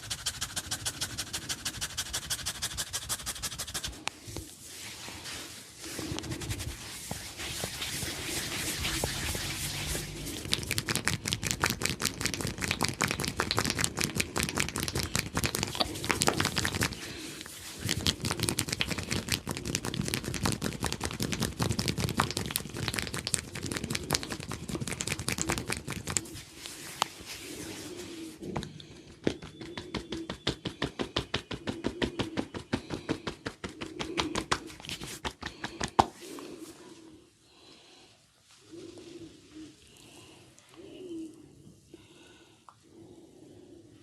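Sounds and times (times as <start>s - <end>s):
hair crackling between fingers: 5.9s - 36.1s.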